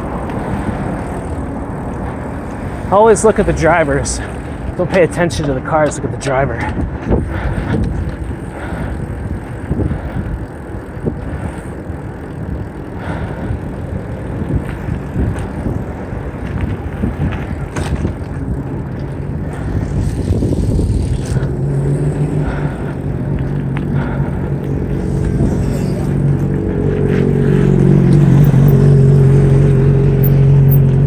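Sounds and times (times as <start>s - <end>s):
vehicle engine drone: 0.0s - 31.0s
wind and road noise: 0.0s - 31.0s.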